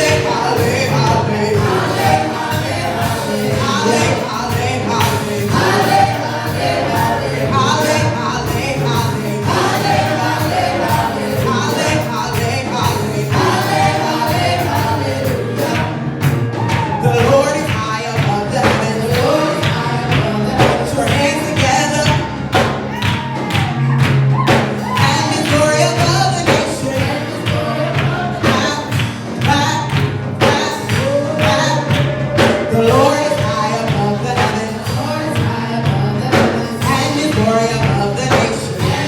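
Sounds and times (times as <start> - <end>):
drums and tambourine beat: 0.0 - 39.0
gospel band playing: 0.0 - 39.0
voices singing: 0.0 - 39.0.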